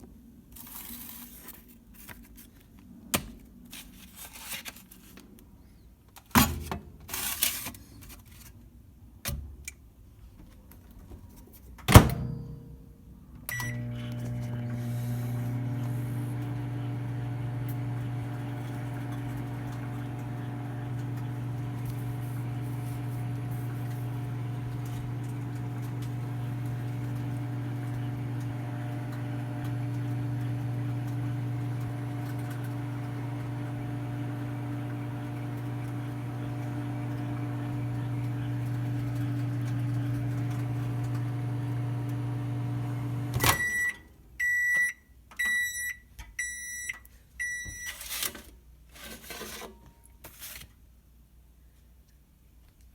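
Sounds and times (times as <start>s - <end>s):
microwave oven humming: 13.5s - 44.0s.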